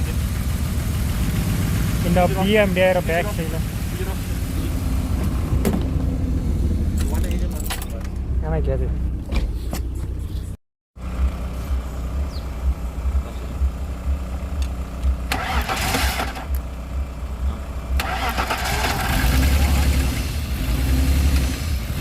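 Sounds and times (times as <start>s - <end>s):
car engine idling: 0.0s - 22.0s
hissing noise: 1.0s - 6.2s.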